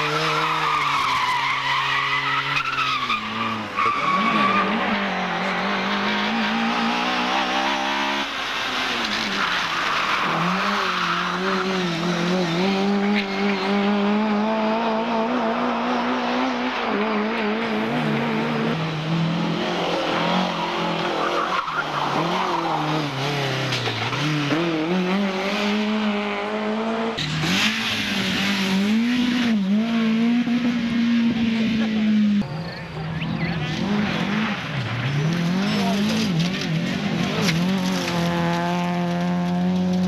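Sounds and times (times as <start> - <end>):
tyre squeal: 0.0 - 5.3
car engine revving hard: 3.2 - 9.4, 10.2 - 32.4, 33.4 - 40.0.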